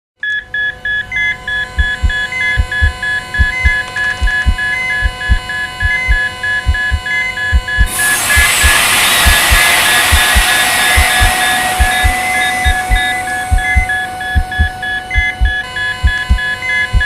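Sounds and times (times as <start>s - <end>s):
heart monitor beeping: 0.2s - 17.0s
steady electronic tones: 1.3s - 17.0s
heartbeat thumps: 1.6s - 17.0s
loud hiss: 7.8s - 15.0s.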